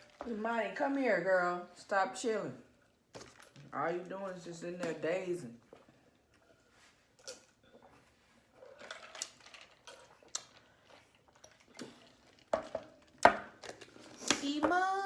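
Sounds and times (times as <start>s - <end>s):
food containers and utensils handled: 3.1s - 15.0s.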